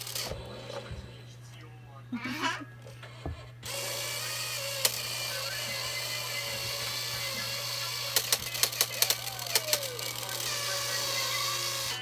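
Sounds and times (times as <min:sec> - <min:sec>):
toy car motor whining: 0:00.0 - 0:00.5, 0:03.1 - 0:12.0
sharp clicks: 0:08.1 - 0:10.4.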